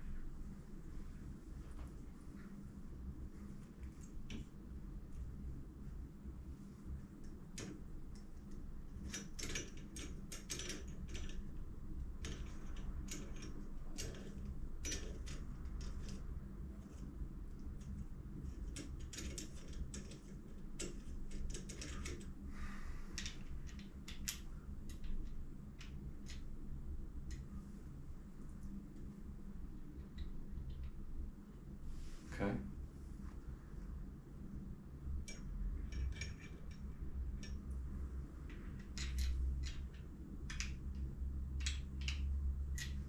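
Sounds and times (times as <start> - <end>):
steady low hum: 0.0 - 43.0
hard parts clicking and rattling: 12.2 - 16.2, 18.4 - 22.3, 38.4 - 43.0.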